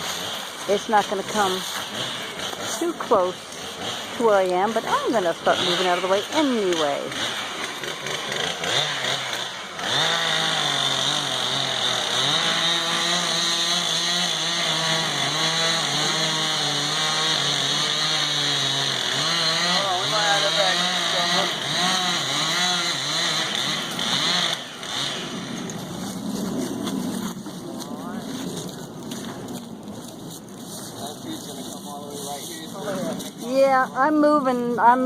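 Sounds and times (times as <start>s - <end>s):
chainsaw cutting wood: 0.0s - 27.6s.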